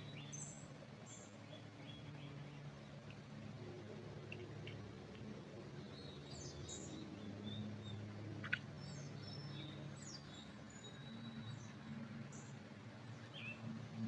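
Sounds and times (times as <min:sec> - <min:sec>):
songbird chirps: 0:00.0 - 0:14.0.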